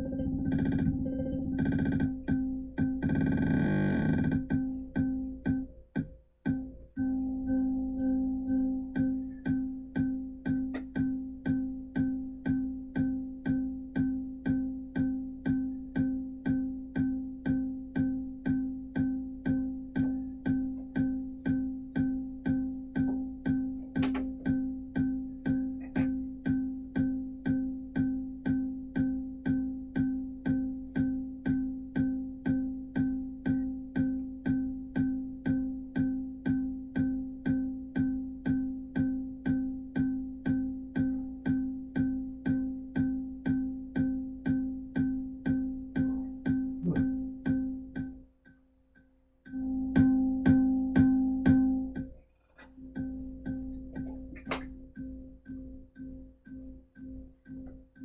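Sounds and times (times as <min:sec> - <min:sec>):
plucked clicky synth note: 0:46.8 - 0:47.2.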